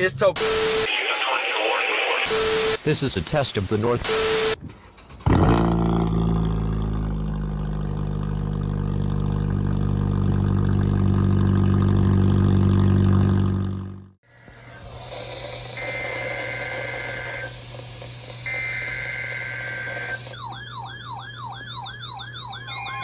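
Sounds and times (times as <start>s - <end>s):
digital data burst: 2.2s - 4.6s.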